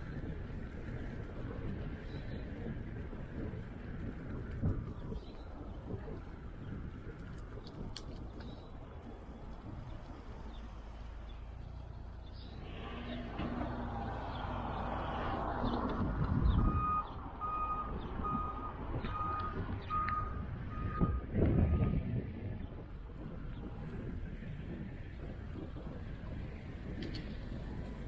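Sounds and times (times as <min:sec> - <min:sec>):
vehicle engine rumble: 0:00.0 - 0:28.0
reversing alarm beeping: 0:16.7 - 0:22.0.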